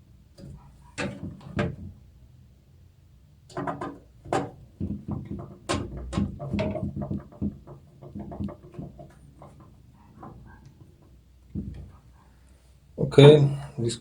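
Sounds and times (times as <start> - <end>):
hard drive knocking in metal case: 3.5 - 12.2.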